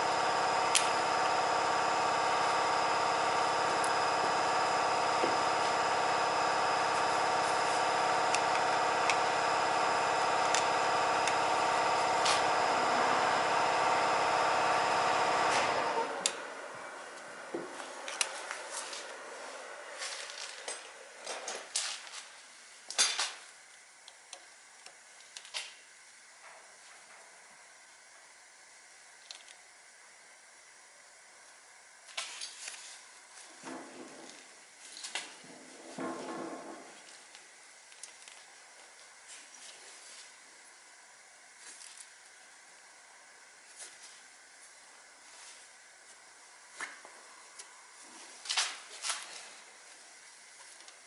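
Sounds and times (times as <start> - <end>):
truck engine running: 0.0 - 19.8.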